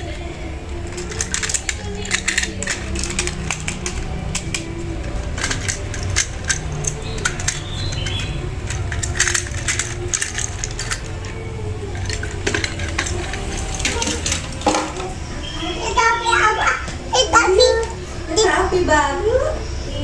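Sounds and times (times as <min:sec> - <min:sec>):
plastic toy parts clicking: 0:00.0 - 0:15.2.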